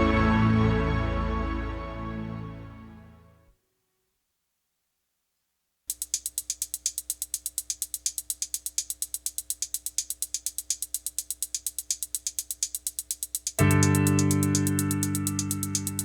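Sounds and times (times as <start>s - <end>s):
fast even ticking: 5.9s - 16.0s.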